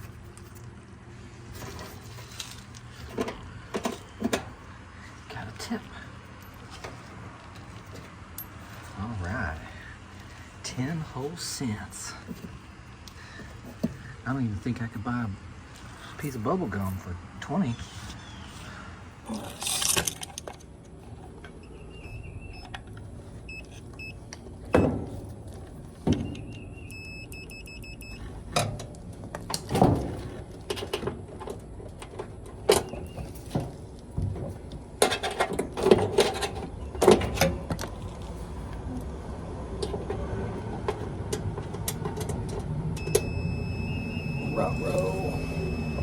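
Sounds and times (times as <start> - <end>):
metallic clatter of tools and parts: 19.4 - 21.5, 28.5 - 38.3
faint short high beeps: 43.0 - 46.0.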